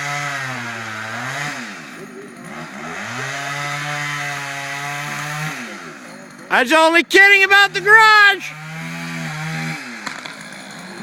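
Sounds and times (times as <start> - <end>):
chainsaw running at high revs: 0.0 - 11.0.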